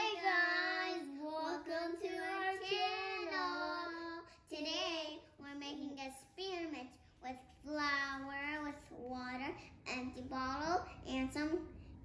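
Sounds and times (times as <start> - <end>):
child singing: 0.0 - 6.9.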